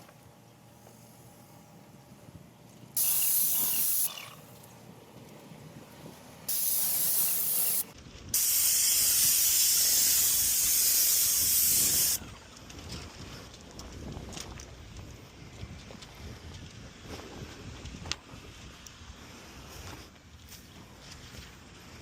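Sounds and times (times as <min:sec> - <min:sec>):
paint sprayer hissing: 0:03.0 - 0:04.4, 0:06.5 - 0:12.2.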